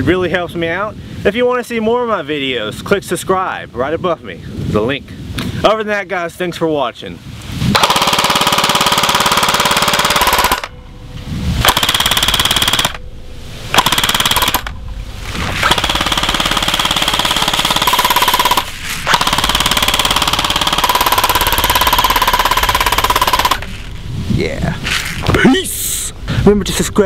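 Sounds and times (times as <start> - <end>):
airsoft gun firing full auto: 7.8 - 10.7, 11.7 - 13.0, 13.7 - 14.7, 15.6 - 23.7.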